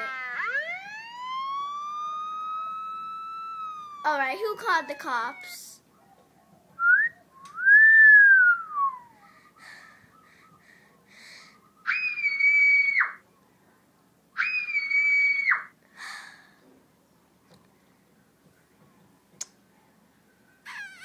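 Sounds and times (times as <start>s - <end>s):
rising and falling whistle: 0.0s - 4.1s, 6.8s - 9.2s
short upward whistle: 6.8s - 9.2s.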